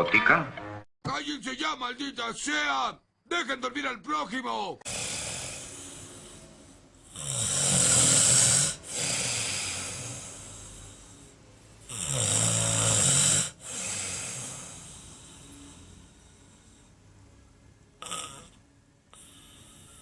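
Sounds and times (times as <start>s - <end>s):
breathy out-breath: 4.9s - 12.2s, 13.5s - 17.2s, 19.1s - 20.0s
loud rasping snoring: 4.9s - 17.0s, 18.0s - 20.0s.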